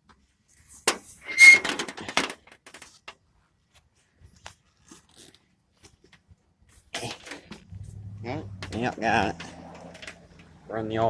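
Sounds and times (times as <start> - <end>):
brief squeak: 1.2 - 1.7
scrap scraping and crunching clatter: 4.6 - 10.6.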